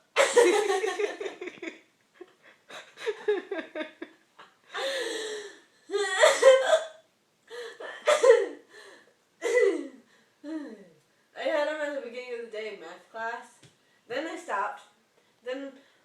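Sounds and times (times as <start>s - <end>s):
person laughing: 0.2s - 4.1s.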